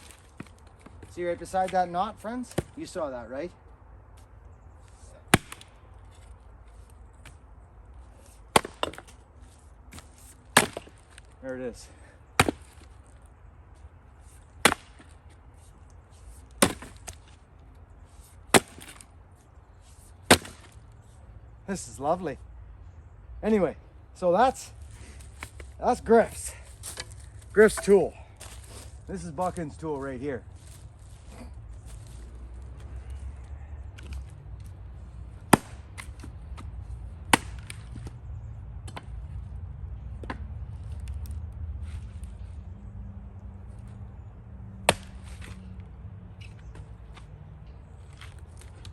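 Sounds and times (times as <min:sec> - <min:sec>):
axe chopping firewood: 0:00.0 - 0:03.0, 0:05.2 - 0:07.4, 0:08.2 - 0:11.4, 0:12.3 - 0:13.2, 0:14.2 - 0:17.4, 0:18.1 - 0:19.1, 0:19.9 - 0:20.9, 0:25.2 - 0:28.6, 0:35.4 - 0:38.2, 0:38.8 - 0:39.3, 0:40.0 - 0:41.3, 0:44.7 - 0:45.7
axe striking wood: 0:02.5 - 0:02.8, 0:05.3 - 0:06.3, 0:08.2 - 0:09.2, 0:09.9 - 0:11.3, 0:12.4 - 0:12.9, 0:14.6 - 0:15.2, 0:16.6 - 0:17.4, 0:18.5 - 0:19.1, 0:20.2 - 0:20.8, 0:35.5 - 0:36.7, 0:37.3 - 0:38.1, 0:44.8 - 0:45.6.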